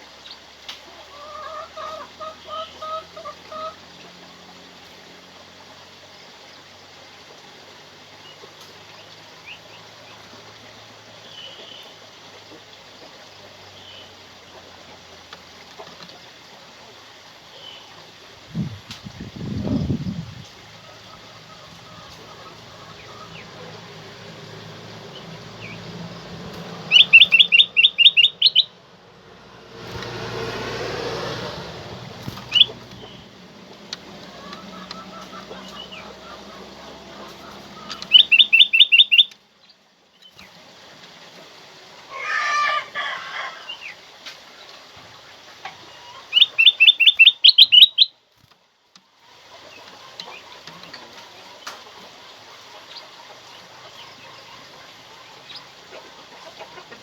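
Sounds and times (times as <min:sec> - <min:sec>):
bulbul calling rapid notes: 0:26.5 - 0:28.8, 0:31.4 - 0:39.4, 0:46.3 - 0:48.1.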